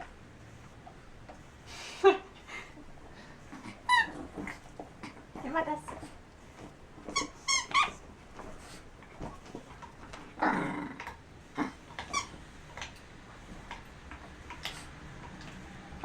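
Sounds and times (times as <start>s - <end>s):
dog growling: 3.4s - 6.1s, 10.2s - 12.9s
rubber squeaky toy squeaking: 3.9s - 4.4s, 7.1s - 8.0s, 12.0s - 12.4s.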